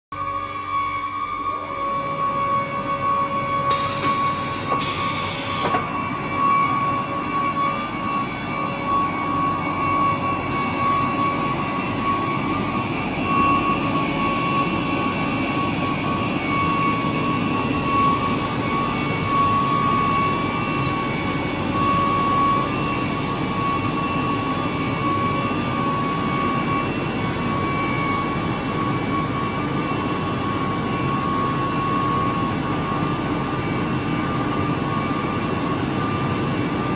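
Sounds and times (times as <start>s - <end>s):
cnc router whining: 0.2s - 36.9s
short air hisses: 3.7s - 5.7s.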